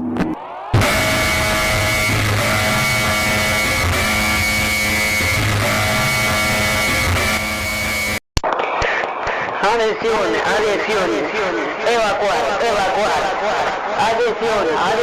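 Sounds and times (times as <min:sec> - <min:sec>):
loud music with guitar: 0:00.0 - 0:08.2.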